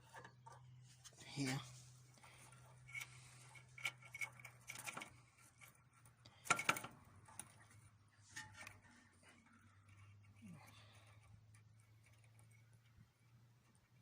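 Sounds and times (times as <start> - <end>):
metallic clicks and rattles of cable: 2.1 - 14.0.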